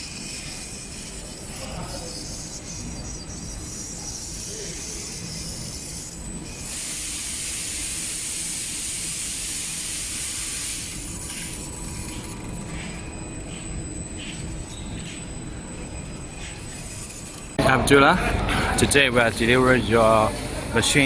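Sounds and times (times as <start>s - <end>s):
loud hiss: 6.7s - 11.0s
machinery mechanical rumble: 11.0s - 21.0s.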